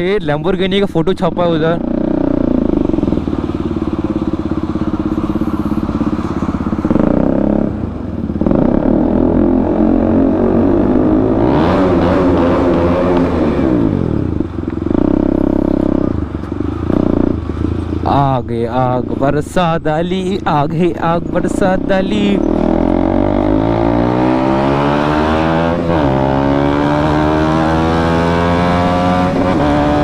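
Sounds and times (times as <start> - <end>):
motorcycle engine revving: 1.2 - 19.0, 20.2 - 30.0.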